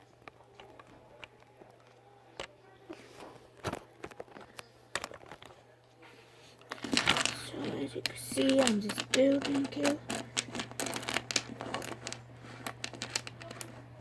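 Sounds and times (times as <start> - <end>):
magnetic metal balls clicking: 6.7 - 13.8.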